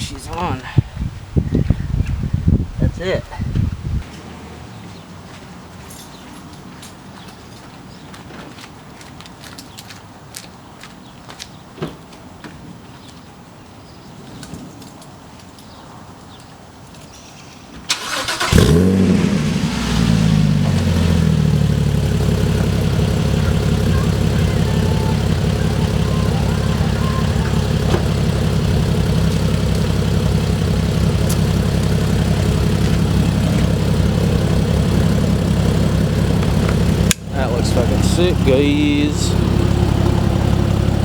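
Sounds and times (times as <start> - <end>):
car engine starting and idling: 17.9 - 41.0.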